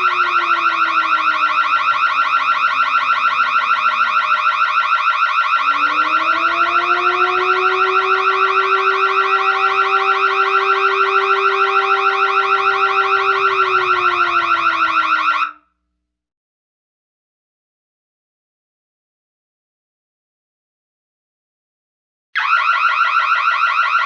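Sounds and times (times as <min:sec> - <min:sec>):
alarm rapid pulsing tone: 0:00.0 - 0:15.5
lower steady alarm tone: 0:00.0 - 0:15.6.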